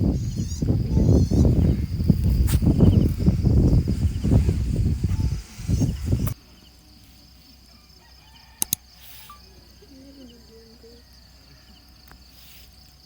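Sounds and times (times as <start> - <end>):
insects chirring: 0.0 - 13.0
sharp clicks: 8.6 - 8.8.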